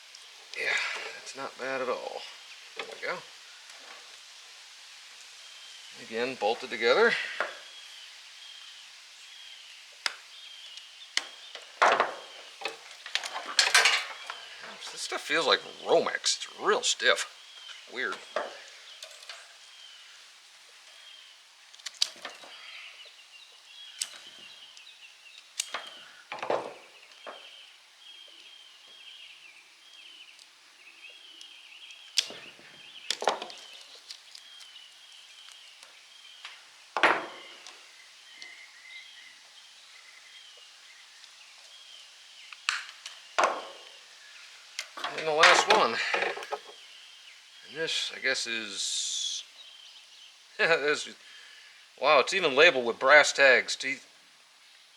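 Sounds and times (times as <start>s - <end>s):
hand tools snapping and clicking: 12.6s - 14.4s, 25.6s - 26.5s, 32.2s - 32.4s.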